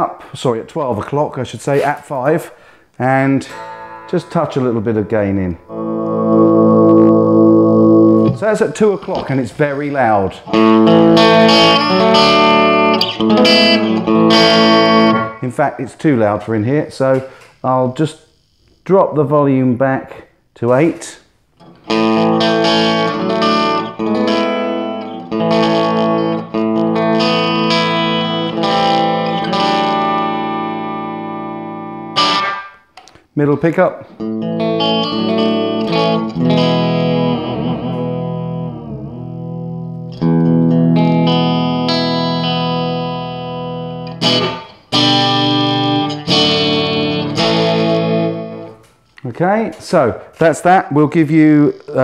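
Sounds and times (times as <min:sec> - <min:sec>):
electric guitar strummed chords: 0:03.4 - 0:09.4, 0:10.2 - 0:15.4, 0:21.6 - 0:32.7, 0:34.1 - 0:48.9.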